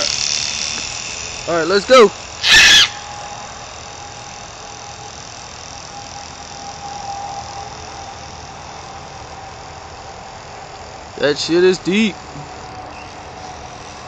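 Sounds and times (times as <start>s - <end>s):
toy helicopter motor whining: 0.0s - 14.0s
loud squeal: 1.9s - 9.7s.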